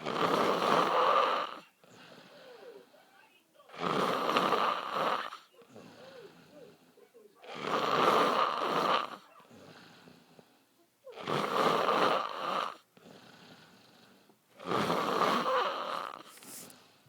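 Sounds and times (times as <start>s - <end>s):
man snoring loudly: 0.0s - 1.6s, 3.8s - 5.4s, 7.5s - 9.2s, 11.2s - 14.0s, 14.6s - 16.2s.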